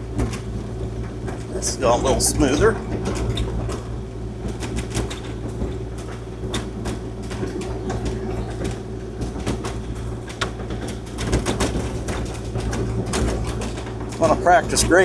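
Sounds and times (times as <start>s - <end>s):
excavator diesel engine running: 0.0s - 4.4s, 12.0s - 15.0s.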